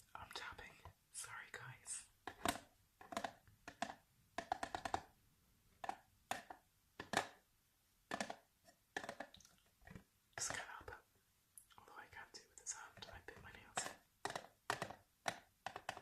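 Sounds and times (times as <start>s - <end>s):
fingertips tapping on a surface: 2.3s - 5.1s, 12.6s - 16.0s.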